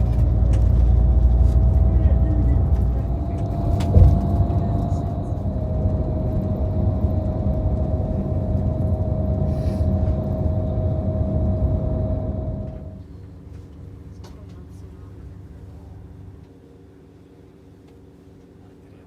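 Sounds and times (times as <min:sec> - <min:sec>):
thin whine: 0:00.0 - 0:13.0
vehicle interior rumble: 0:00.0 - 0:13.0
thump: 0:03.6 - 0:05.0.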